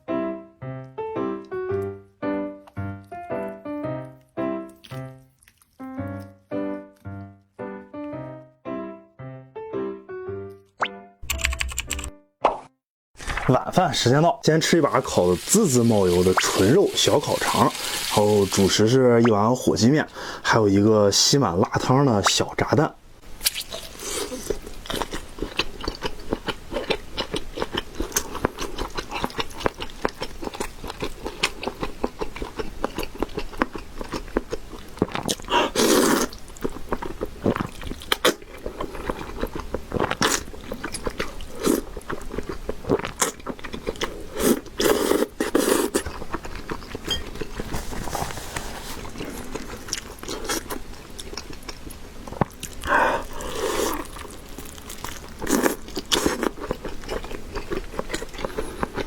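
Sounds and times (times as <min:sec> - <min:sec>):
biting into sausage: 0:04.2 - 0:06.4, 0:23.4 - 0:47.7
chewing with wet smacks: 0:04.8 - 0:06.4, 0:23.8 - 0:35.5, 0:36.1 - 0:47.8, 0:49.1 - 0:59.0.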